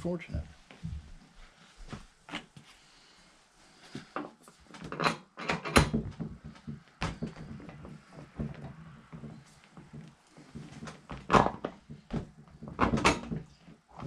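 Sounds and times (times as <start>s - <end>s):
knocks and clatter of bike parts: 4.2s - 14.0s.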